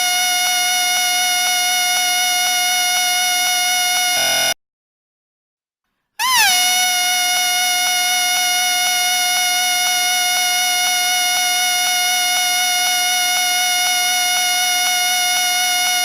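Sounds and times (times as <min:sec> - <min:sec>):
shrill whistle tone: 0:04.0 - 0:04.6, 0:06.2 - 0:11.1.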